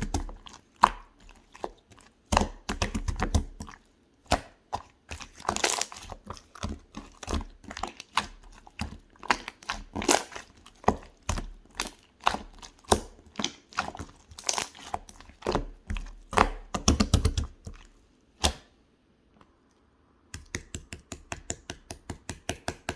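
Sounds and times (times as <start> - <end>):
slime popping and crackling: 5.2 - 6.2, 9.2 - 17.6.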